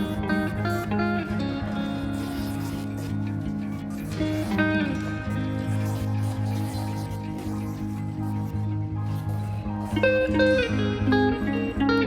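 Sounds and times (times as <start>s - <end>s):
higher guitar melody: 0.0s - 12.0s
plucked guitar: 0.0s - 12.0s.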